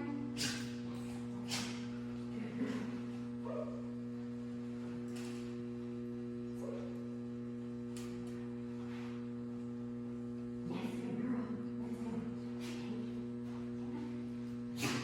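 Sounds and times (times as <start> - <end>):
electrical mains hum: 0.0 - 15.0.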